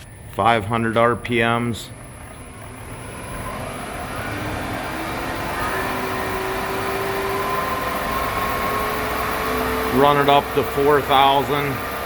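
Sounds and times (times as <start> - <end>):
motor whine rising in pitch: 1.9 - 12.0.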